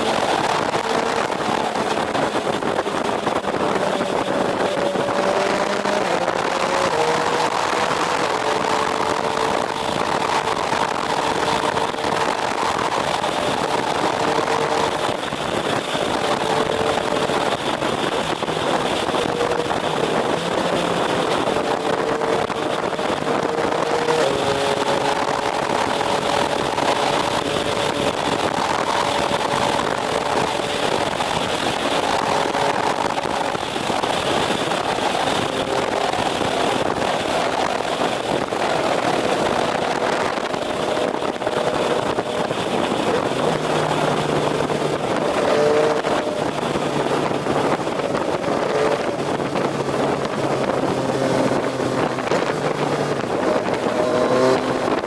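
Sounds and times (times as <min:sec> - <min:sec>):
motorcycle engine running: 0:00.0 - 0:55.0
wind noise: 0:00.0 - 0:55.0.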